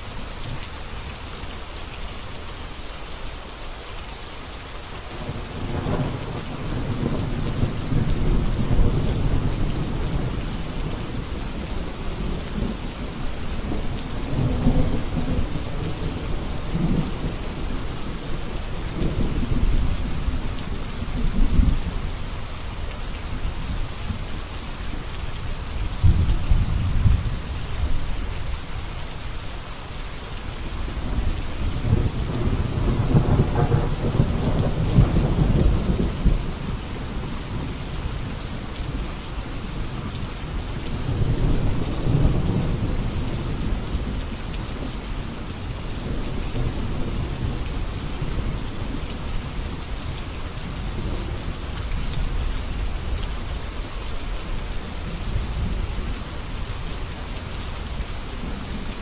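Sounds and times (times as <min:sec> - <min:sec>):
steady rain: 0:00.0 - 0:59.0
thunder rumbling: 0:26.0 - 0:28.1, 0:31.0 - 0:39.2.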